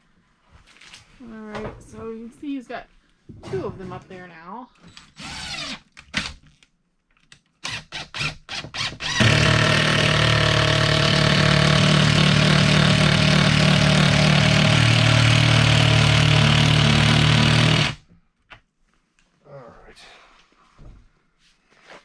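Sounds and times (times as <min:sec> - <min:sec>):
power drill driving a screw: 0:04.9 - 0:06.4, 0:07.6 - 0:18.0.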